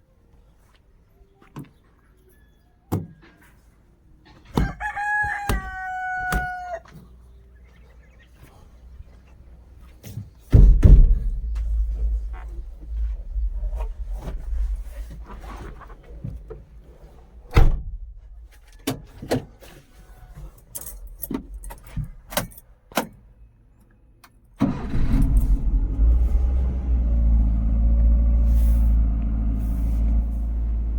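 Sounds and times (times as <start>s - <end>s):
car engine running: 24.7s - 30.9s.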